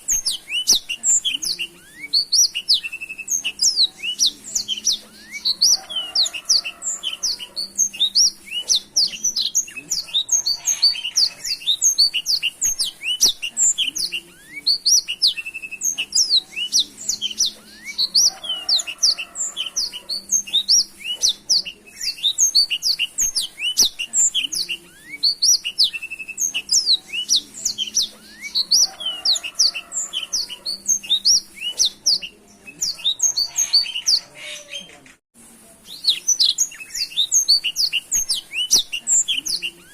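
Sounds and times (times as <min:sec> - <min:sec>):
canary singing: 0:00.0 - 0:35.2, 0:35.8 - 0:39.9.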